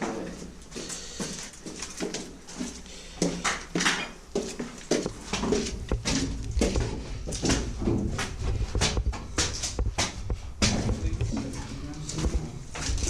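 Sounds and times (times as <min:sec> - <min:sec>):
footsteps crunching over rubble: 0:00.0 - 0:13.0
low rumble on microphone: 0:05.1 - 0:13.0.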